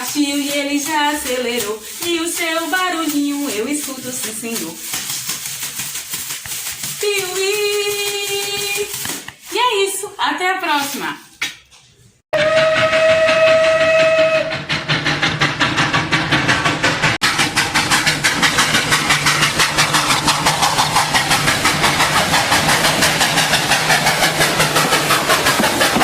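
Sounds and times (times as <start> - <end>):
steam engine chuffing: 0.0 - 9.6, 12.4 - 26.0
steam locomotive whistle: 12.3 - 15.4.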